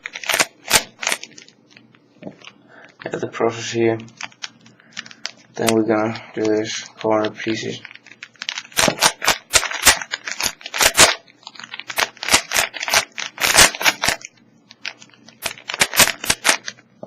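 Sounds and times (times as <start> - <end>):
puzzle cube clicking: 8.4 - 16.7.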